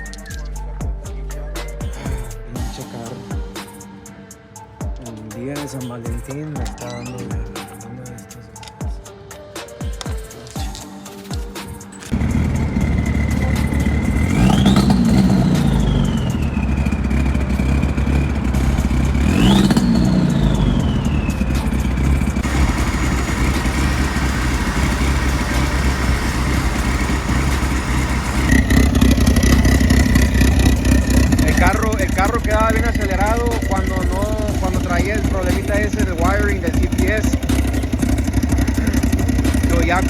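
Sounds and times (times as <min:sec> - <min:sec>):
car engine revving and idling: 0:12.1 - 0:40.0.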